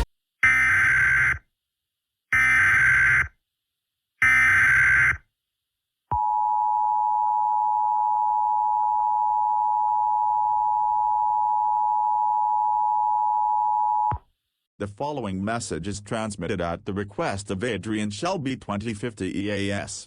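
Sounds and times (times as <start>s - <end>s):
two-tone electronic alarm: 4.2s - 5.2s.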